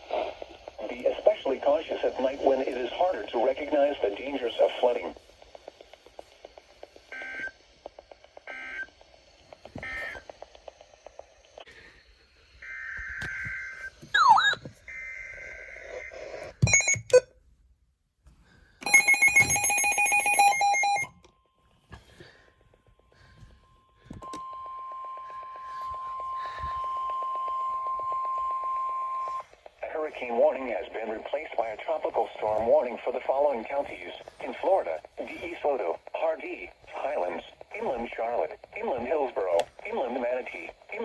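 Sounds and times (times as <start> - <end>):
steady radio alert tone: 0.0 - 5.3, 24.2 - 41.0
electronic chirps: 13.3 - 14.6
pulsing ringing tone: 23.8 - 29.4.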